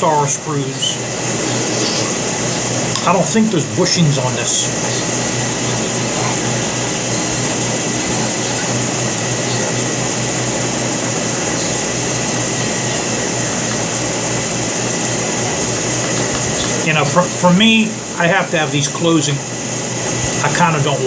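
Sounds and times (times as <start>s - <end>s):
low hum: 0.0s - 21.0s.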